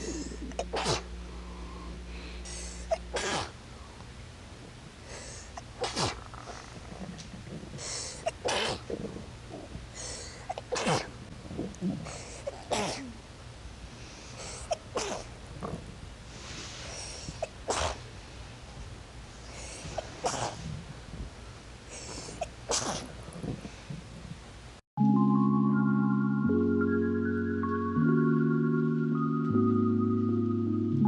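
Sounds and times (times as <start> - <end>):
person sneezing: 0.0 - 1.1, 2.5 - 3.6, 5.8 - 6.3, 7.8 - 8.9, 10.0 - 11.1, 12.4 - 13.2, 14.6 - 15.3, 17.4 - 18.0, 22.2 - 23.1
breathy in-breath: 1.3 - 2.9, 9.9 - 10.5.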